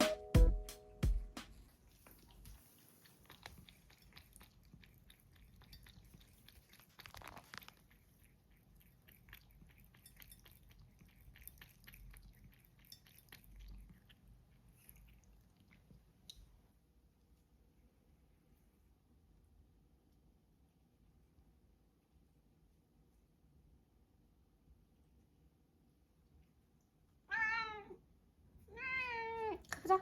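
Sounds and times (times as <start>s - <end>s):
cat chewing crunches: 1.5s - 16.5s.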